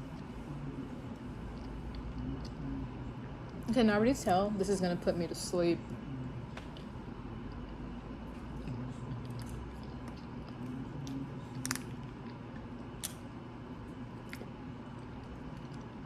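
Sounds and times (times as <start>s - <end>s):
person chewing food: 1.1s - 2.6s, 6.6s - 16.0s.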